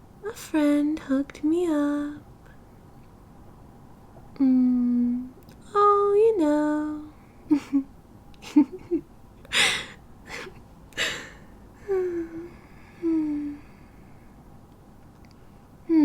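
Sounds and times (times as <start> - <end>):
woman humming: 4.4 - 7.9, 11.8 - 13.7
woman gasping and breathing: 9.5 - 13.9.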